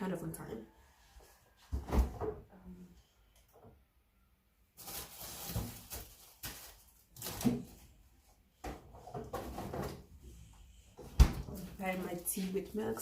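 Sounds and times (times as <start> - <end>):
rustling: 4.8 - 8.0.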